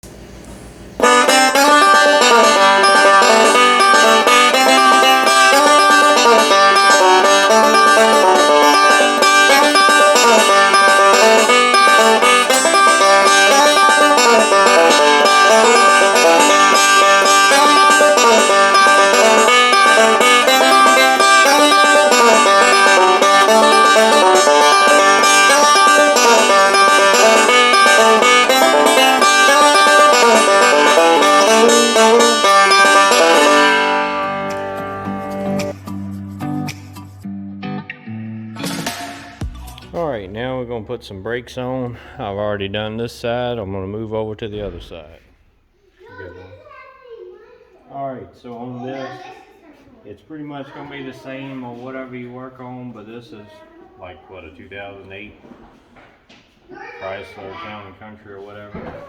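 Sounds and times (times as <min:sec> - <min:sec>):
banjo-led bluegrass music: 0:01.0 - 0:35.8.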